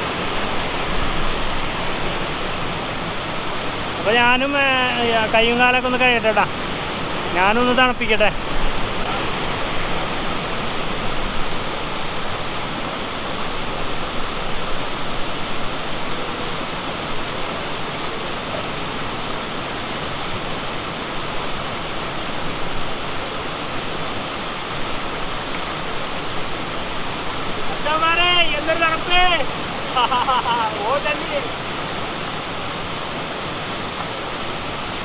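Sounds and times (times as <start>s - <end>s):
waterfall and stream rushing: 0.0s - 35.0s.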